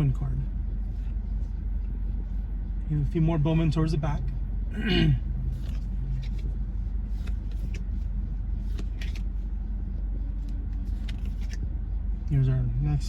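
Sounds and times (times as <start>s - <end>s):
low hum inside a car: 0.0s - 13.0s
cards flipped through by hand: 5.5s - 9.4s, 10.4s - 11.7s.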